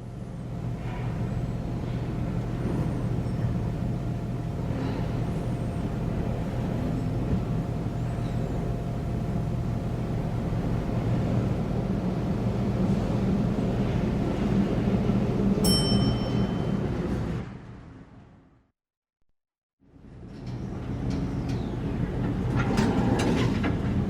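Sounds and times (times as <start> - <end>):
elevator drive hum: 0.0 - 18.6.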